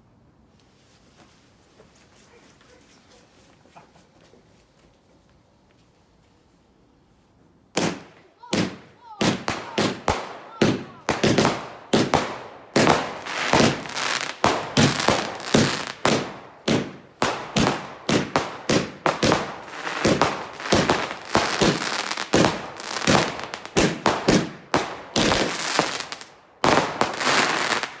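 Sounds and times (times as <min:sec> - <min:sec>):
fireworks banging: 0:07.8 - 0:28.0.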